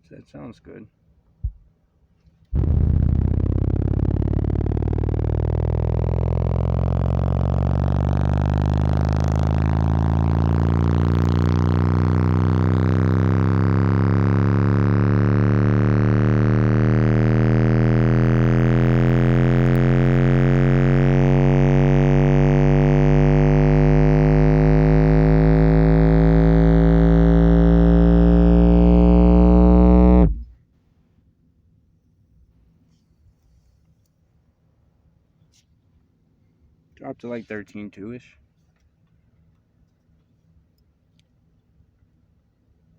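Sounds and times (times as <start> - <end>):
subwoofer bass tone sweep: 2.6 - 30.5.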